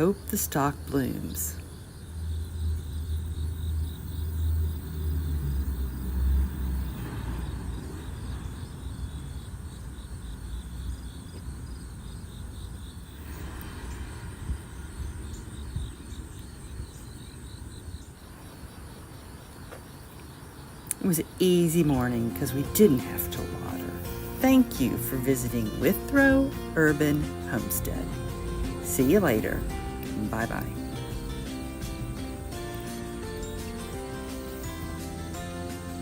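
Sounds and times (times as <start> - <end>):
insects chirping: 0.0 - 36.0
low rumble: 13.1 - 17.1, 23.4 - 32.5.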